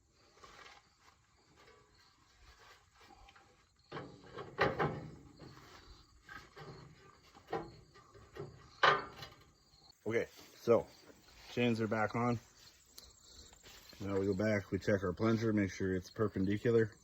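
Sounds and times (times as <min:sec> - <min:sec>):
metal clanks and rattling: 0:03.8 - 0:09.8.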